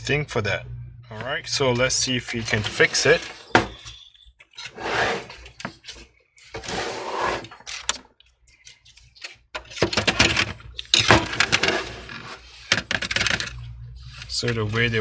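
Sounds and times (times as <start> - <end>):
scraping and sliding noises: 4.6 - 8.0, 8.7 - 13.6
plastic and metal parts clicking: 7.7 - 11.7, 12.7 - 13.6.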